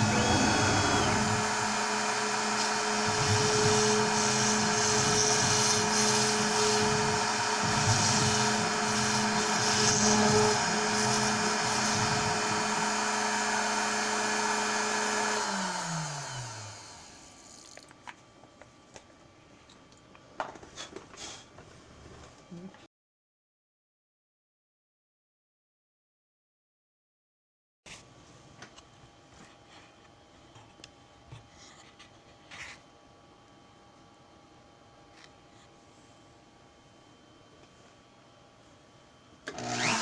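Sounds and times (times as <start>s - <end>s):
machine motor whining: 0.0s - 17.8s, 39.4s - 40.0s.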